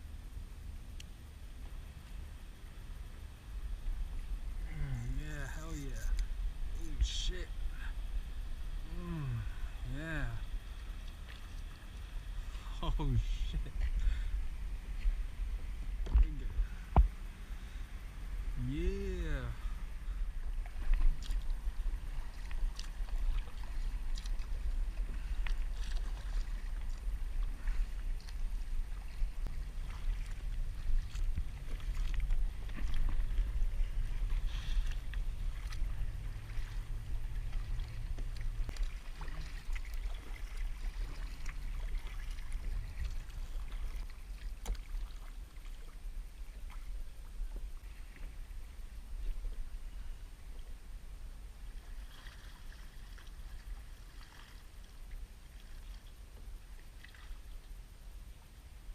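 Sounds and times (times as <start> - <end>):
steady low rumble: 0.0 - 56.9
water lapping around a kayak: 0.0 - 58.9.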